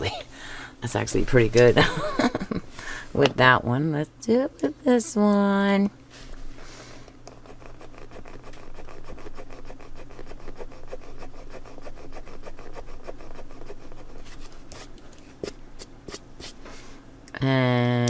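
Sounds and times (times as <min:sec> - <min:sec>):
eraser rubbing on paper: 0:07.4 - 0:16.6.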